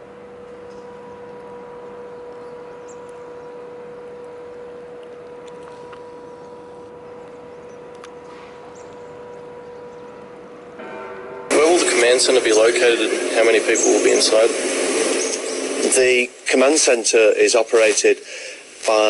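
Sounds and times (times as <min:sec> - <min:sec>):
steady hum: 0:00.0 - 0:19.0
background hiss: 0:11.5 - 0:19.0.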